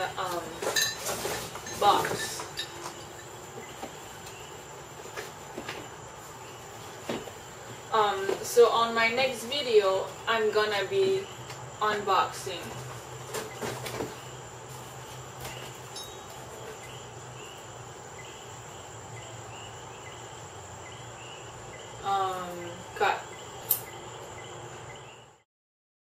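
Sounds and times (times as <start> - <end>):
insect chirping: 0.0 - 25.4
sharp click: 23.6 - 23.9.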